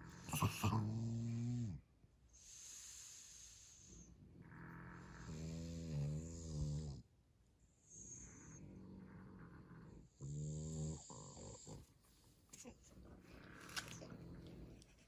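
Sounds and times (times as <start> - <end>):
dog snoring: 0.0 - 1.8, 2.4 - 7.1, 7.8 - 12.0.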